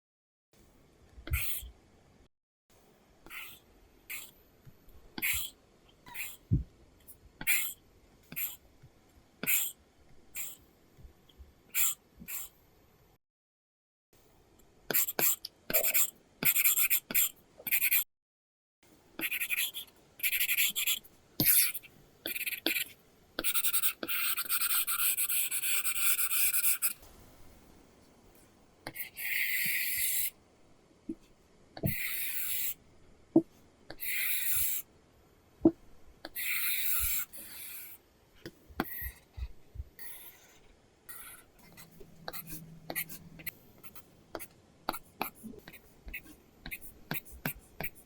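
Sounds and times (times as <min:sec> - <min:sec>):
pen scratching on screen: 0:01.3 - 0:01.7, 0:03.3 - 0:04.4, 0:05.2 - 0:06.6, 0:07.4 - 0:08.6, 0:09.4 - 0:09.8, 0:10.4 - 0:10.6, 0:11.8 - 0:12.5, 0:14.9 - 0:18.0, 0:19.2 - 0:27.0, 0:28.9 - 0:30.4, 0:31.8 - 0:32.8, 0:33.9 - 0:34.9, 0:36.3 - 0:48.0.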